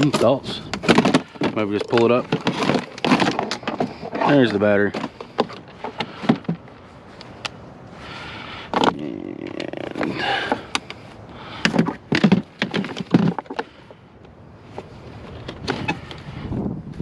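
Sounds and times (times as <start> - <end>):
clicks knocks and rattles of handling: 0.0 - 7.6, 11.6 - 16.2.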